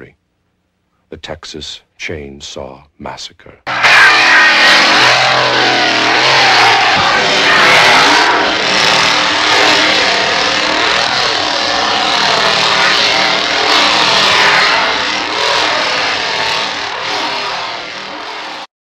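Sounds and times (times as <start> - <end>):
chainsaw engine revving: 3.7 - 18.7.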